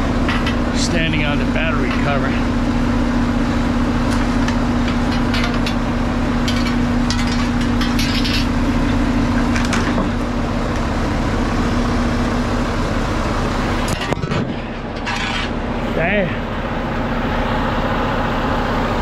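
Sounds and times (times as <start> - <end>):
garbage truck engine idling: 0.0 - 19.0
metal hook scraping and clanking: 6.4 - 8.6, 13.9 - 15.6.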